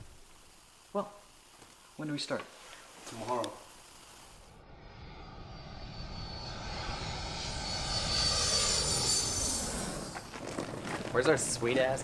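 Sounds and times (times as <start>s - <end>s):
airplane engine roar: 4.6s - 11.1s.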